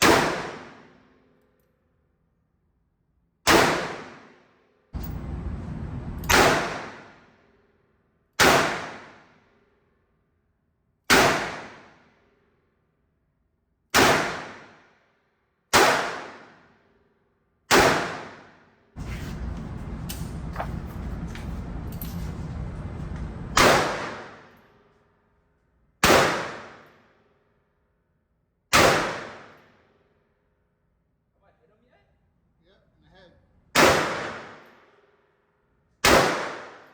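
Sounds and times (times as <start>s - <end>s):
steady rumbling noise: 5.0s - 6.6s, 19.0s - 24.1s
rifle shots echoing: 5.0s - 7.0s, 19.3s - 24.4s.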